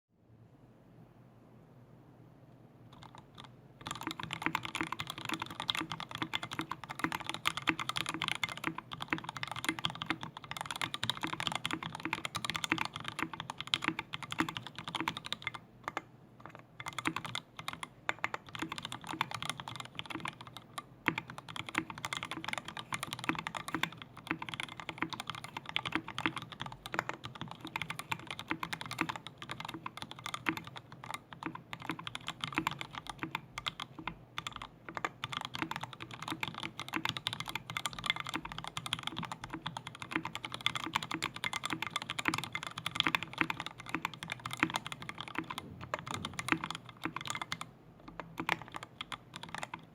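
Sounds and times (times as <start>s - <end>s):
mechanical keyboard typing: 2.9s - 49.9s.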